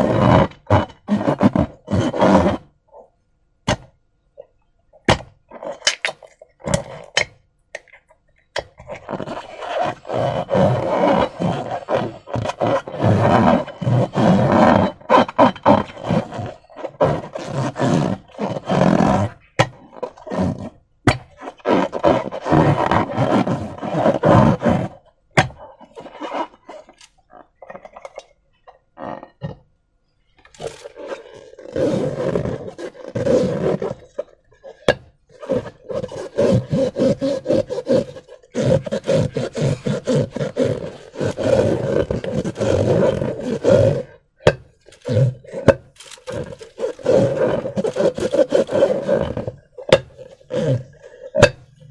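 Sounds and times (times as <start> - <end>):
slime squelching and crackling: 44.8 - 51.9.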